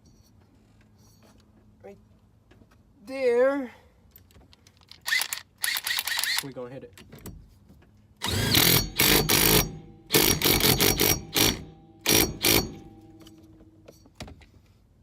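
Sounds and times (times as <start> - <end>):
impact wrench whine: 8.2 - 13.6
impact wrench rattling: 8.3 - 13.4.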